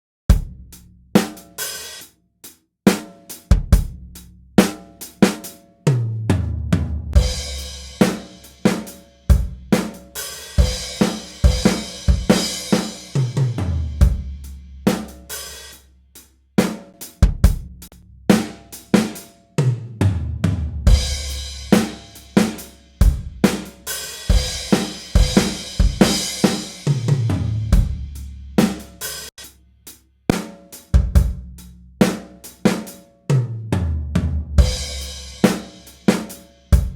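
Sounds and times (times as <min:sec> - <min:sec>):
drum kit pattern: 0:00.3 - 0:02.1, 0:02.9 - 0:33.5, 0:34.6 - 0:36.9
low bass notes: 0:13.5 - 0:14.9, 0:23.0 - 0:23.5, 0:27.1 - 0:28.8.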